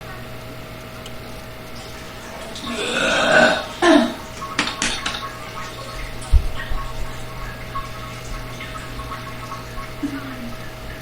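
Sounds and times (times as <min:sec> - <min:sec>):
person burping: 0:02.5 - 0:05.2.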